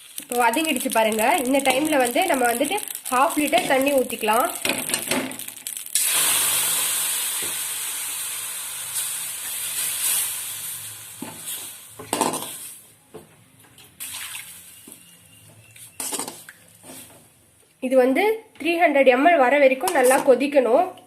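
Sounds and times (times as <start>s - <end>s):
water hissing in hot pan: 0.0s - 12.8s.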